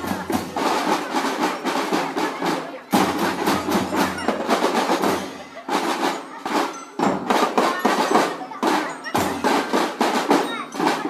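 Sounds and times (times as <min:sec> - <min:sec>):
marching drum band: 0:00.0 - 0:11.0.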